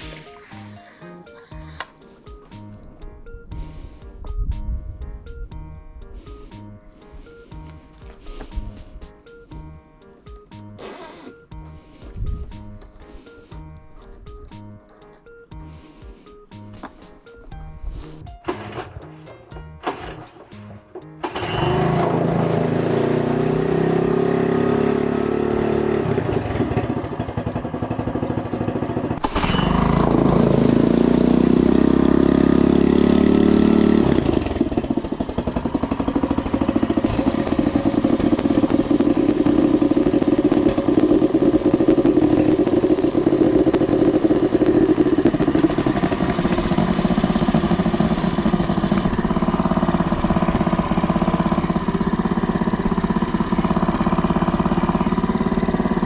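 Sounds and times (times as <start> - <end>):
outboard motor running: 21.2 - 56.0.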